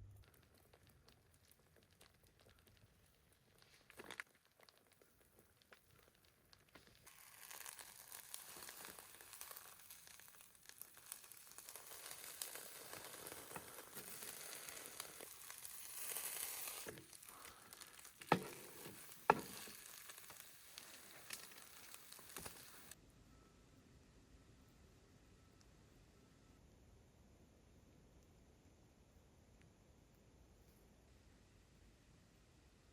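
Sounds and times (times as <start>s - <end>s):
food sizzling in frying pan: 5.8s - 23.0s.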